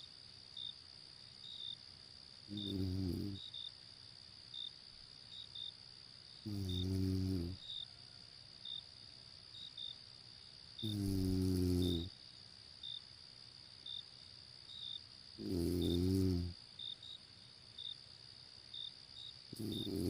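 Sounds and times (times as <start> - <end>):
crickets chirring: 0.0 - 20.0
person snoring: 2.5 - 3.4, 6.5 - 7.6, 10.8 - 12.1, 15.4 - 16.6, 19.6 - 20.0.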